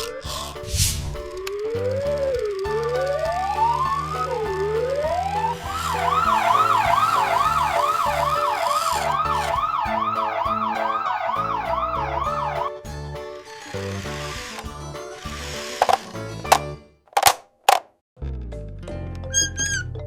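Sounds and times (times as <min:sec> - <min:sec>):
background music: 0:00.0 - 0:17.0
cartoon siren wailing: 0:01.8 - 0:12.7.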